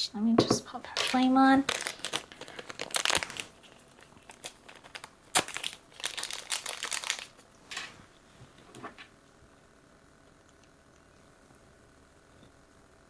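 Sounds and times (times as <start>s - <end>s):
plastic packaging crinkling: 0.9s - 7.8s.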